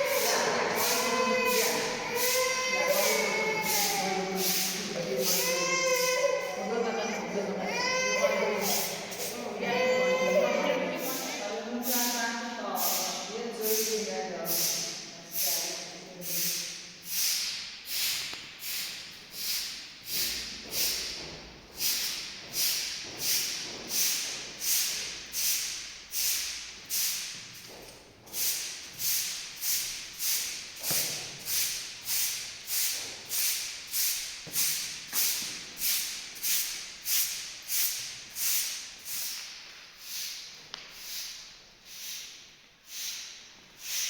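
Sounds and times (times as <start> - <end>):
bristles brushing a hard surface: 0.0 - 6.9.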